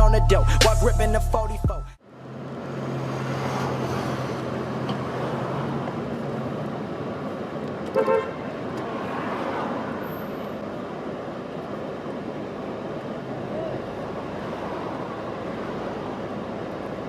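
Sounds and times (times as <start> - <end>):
street traffic noise: 0.0 - 17.0
car horn beeps: 7.9 - 8.4.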